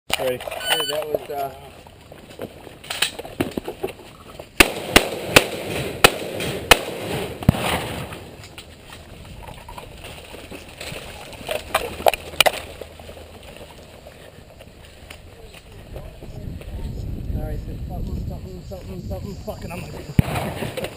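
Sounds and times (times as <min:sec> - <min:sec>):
shotgun shots: 0:04.6 - 0:08.3, 0:20.2 - 0:20.9.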